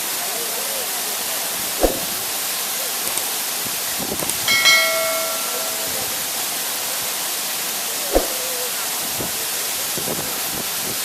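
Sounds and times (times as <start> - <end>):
ringing metallic tone: 4.5 - 6.1.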